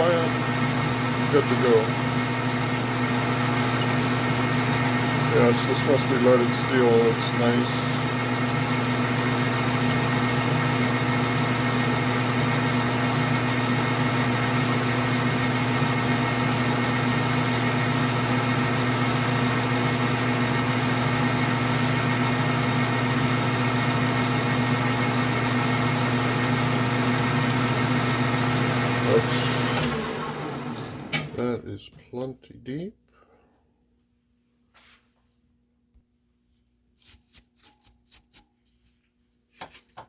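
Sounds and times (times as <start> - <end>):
metal lathe humming: 0.0 - 31.6.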